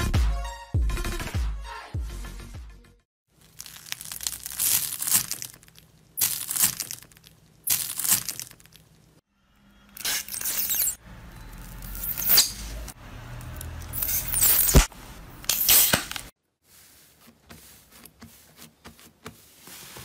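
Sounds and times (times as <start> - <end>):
slime crackling and popping: 3.3 - 9.1.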